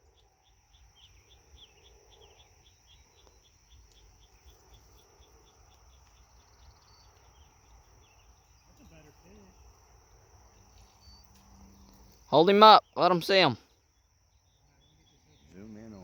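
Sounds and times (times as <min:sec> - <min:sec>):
bird calls: 0:00.0 - 0:09.6
insects chirping: 0:00.0 - 0:16.0
insects humming: 0:00.0 - 0:16.0.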